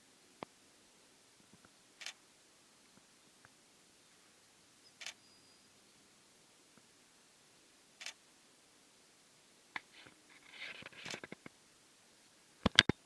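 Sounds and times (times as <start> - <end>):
camera clicks: 2.0 - 2.2, 5.0 - 5.2, 8.0 - 8.2.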